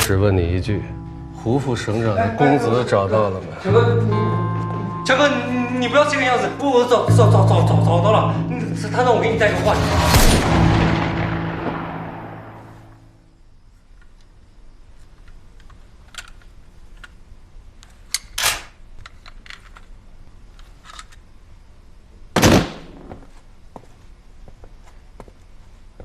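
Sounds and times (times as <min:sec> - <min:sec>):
loud sharp impacts: 0:09.4 - 0:13.2.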